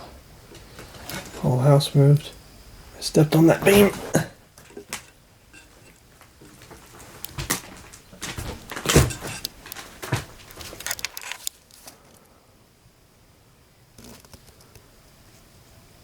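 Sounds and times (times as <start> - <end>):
footsteps on wooden beams: 6.4 - 10.8.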